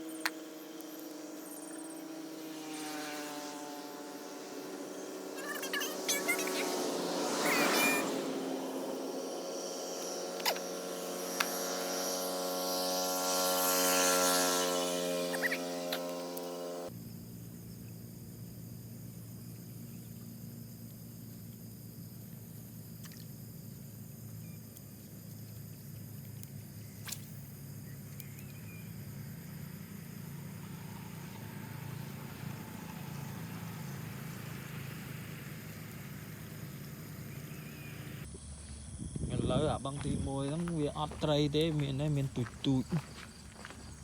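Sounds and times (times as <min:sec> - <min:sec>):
faint high hum: 0:00.0 - 0:44.0
low outdoor rumble: 0:27.6 - 0:44.0.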